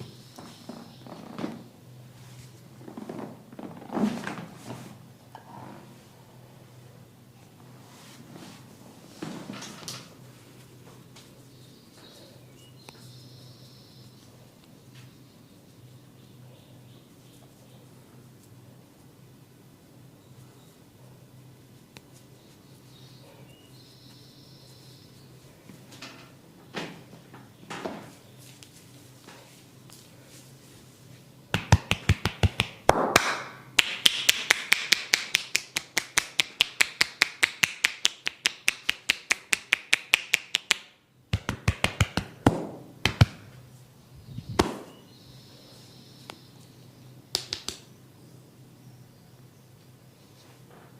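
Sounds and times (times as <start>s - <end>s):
hands tapping on head: 31.5s - 43.4s, 47.3s - 47.8s.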